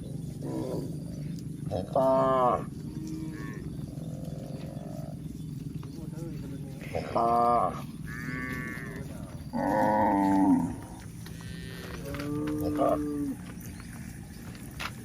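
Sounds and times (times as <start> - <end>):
cows mooing: 0.0 - 14.3.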